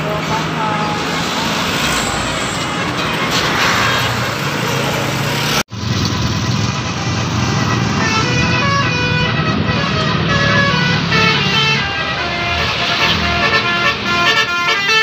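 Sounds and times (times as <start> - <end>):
bus engine rumble: 0.0 - 15.0
road traffic: 0.0 - 15.0
multi-tone bus horn tune: 6.3 - 15.0.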